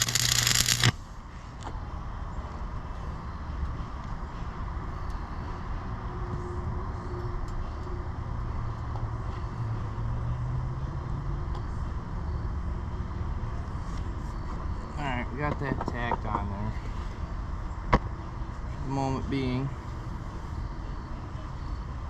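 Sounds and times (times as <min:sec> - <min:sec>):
faint ticks: 0:00.0 - 0:00.9
low mechanical rumble and hum: 0:00.0 - 0:22.0.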